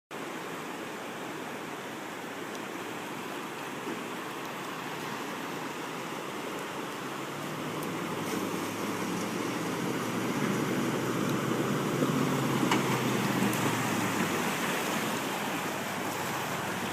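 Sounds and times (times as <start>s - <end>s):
river water rushing: 0.1s - 16.9s
vehicle engine humming: 6.6s - 16.9s.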